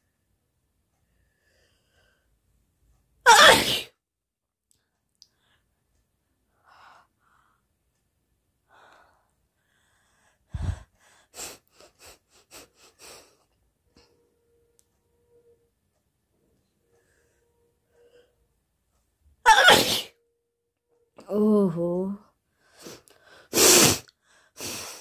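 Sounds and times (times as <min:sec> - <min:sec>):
woman sneezing: 0:03.3 - 0:03.9, 0:19.5 - 0:20.1
faint sniffs: 0:10.6 - 0:13.5, 0:22.7 - 0:25.0
nose blowing into tissue: 0:23.5 - 0:25.0.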